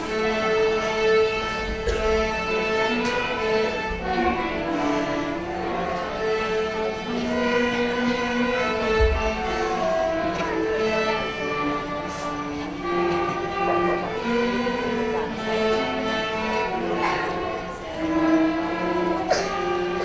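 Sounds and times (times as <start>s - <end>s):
string ensemble playing slow piece: 0.0s - 20.0s.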